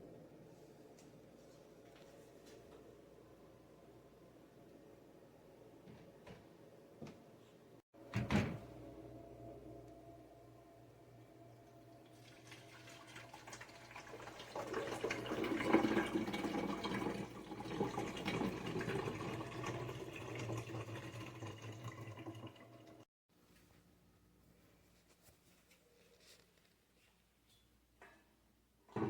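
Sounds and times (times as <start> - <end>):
low steady hum: 0.0 - 13.1.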